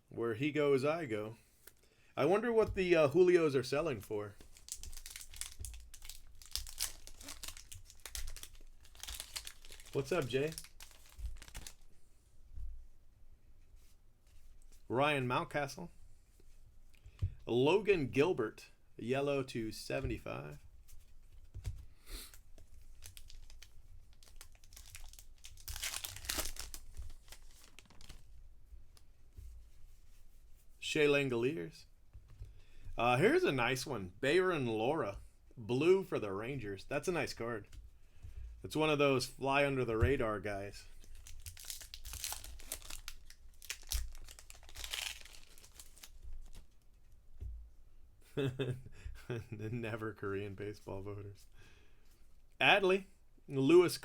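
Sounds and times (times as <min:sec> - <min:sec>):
cards being handled: 0:04.4 - 0:11.9, 0:41.0 - 0:46.7
wrappers crinkling: 0:04.4 - 0:11.9, 0:22.3 - 0:28.4, 0:40.9 - 0:46.8
wrapper tearing rasp: 0:04.5 - 0:11.8, 0:23.0 - 0:28.2, 0:41.0 - 0:46.6.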